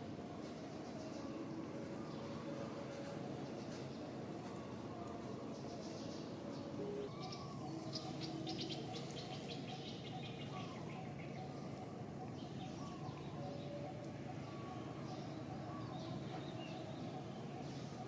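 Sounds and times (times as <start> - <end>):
background hiss: 0.0 - 17.9
birds chirping: 5.3 - 18.0.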